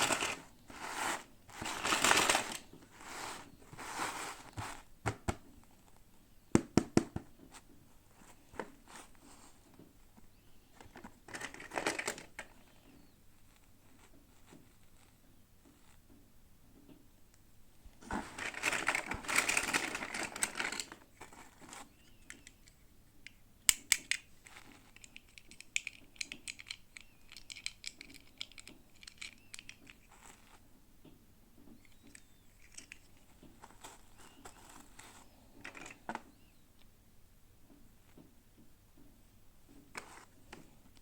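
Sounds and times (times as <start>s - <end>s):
small clicks taps and rustles: 18.4s - 36.9s.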